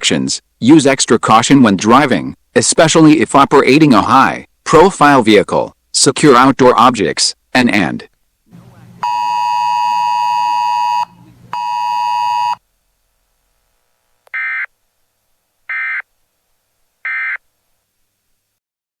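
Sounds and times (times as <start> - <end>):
buzzy radio alert tone: 8.5 - 12.6, 15.7 - 16.0.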